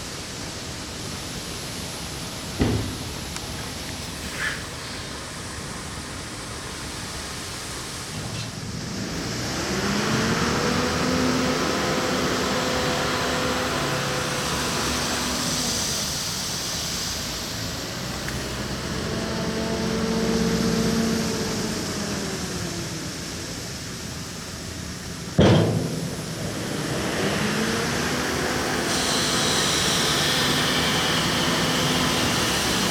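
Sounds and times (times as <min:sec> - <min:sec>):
diesel engine revving: 0:08.2 - 0:32.9.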